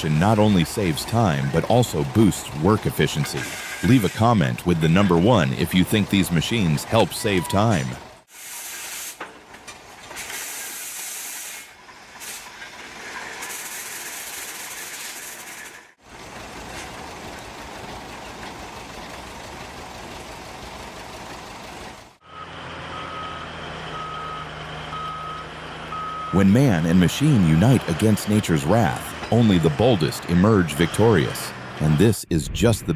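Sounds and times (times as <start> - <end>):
engine running: 0.0 - 8.3, 14.4 - 32.9
reversing alarm beeping: 6.8 - 8.0, 22.2 - 26.6.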